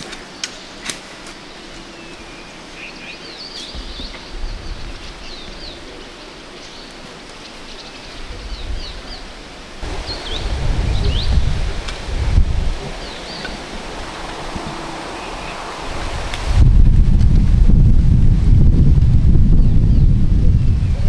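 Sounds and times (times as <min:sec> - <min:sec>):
steady outdoor hiss: 0:00.0 - 0:21.0
small birds chirping: 0:00.2 - 0:17.1
low rumbles: 0:09.8 - 0:21.0.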